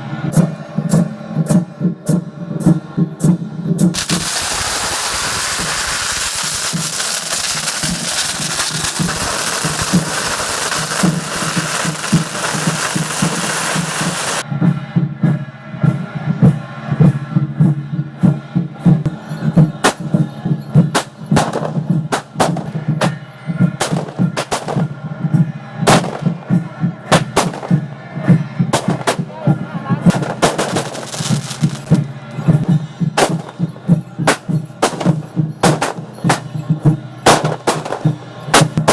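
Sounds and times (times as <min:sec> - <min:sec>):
fireworks crackling hiss: 0:03.9 - 0:14.4, 0:30.1 - 0:32.0
fireworks pops and bangs: 0:03.9 - 0:14.4, 0:21.0 - 0:22.7, 0:23.8 - 0:24.9, 0:25.9 - 0:26.4, 0:27.1 - 0:27.8, 0:28.7 - 0:29.3, 0:30.1 - 0:32.0, 0:33.2 - 0:36.5, 0:37.3 - 0:38.9
background music: 0:06.3 - 0:38.9.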